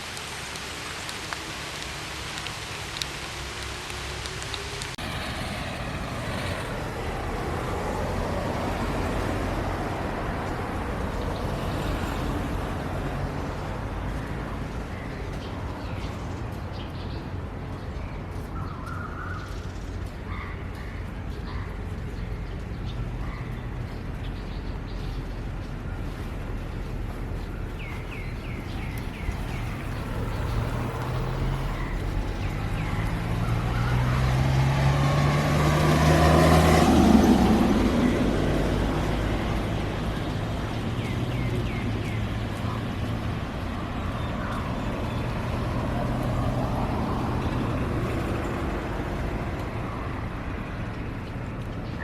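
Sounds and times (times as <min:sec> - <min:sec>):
vehicle passing by: 0:04.5 - 0:14.7, 0:27.5 - 0:51.8.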